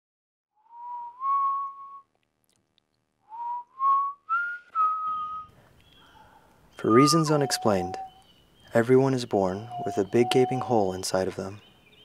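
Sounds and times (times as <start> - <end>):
person whistling a tune: 0.6 - 2.1, 3.3 - 5.5.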